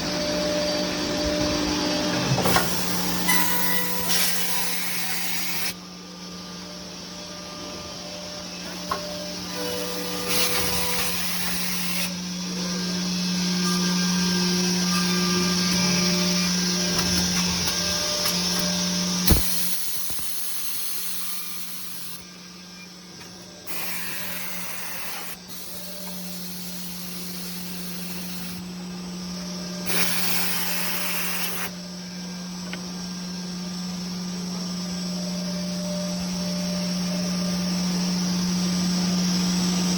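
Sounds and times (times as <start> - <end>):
machine motor hum: 0.0 - 39.9
machine hissing: 2.4 - 5.8, 9.8 - 12.2, 19.2 - 22.2, 23.6 - 28.6, 29.8 - 31.7.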